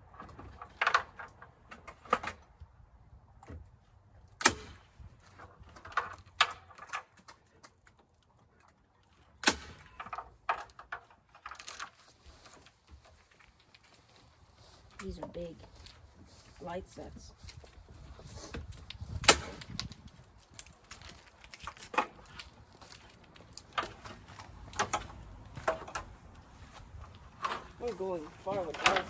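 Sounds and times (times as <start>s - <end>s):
handling rustle: 11.0s - 29.0s.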